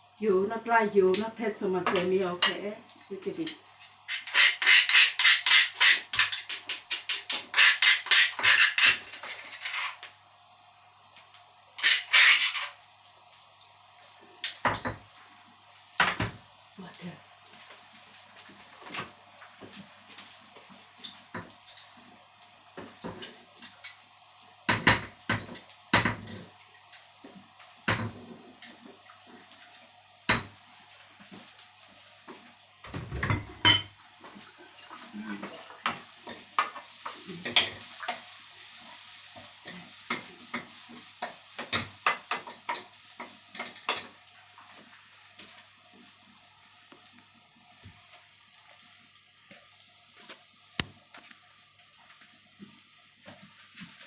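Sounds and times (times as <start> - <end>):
frying sizzle: 0.0 - 54.0
utensils clinking against pan: 1.1 - 2.6, 3.4 - 10.1, 11.8 - 12.8, 35.8 - 38.2.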